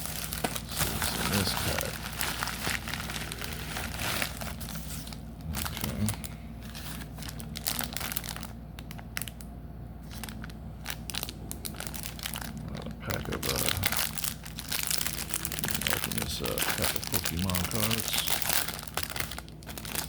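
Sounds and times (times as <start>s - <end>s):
wrapper crinkling and tearing: 0.0s - 9.4s, 10.0s - 20.0s.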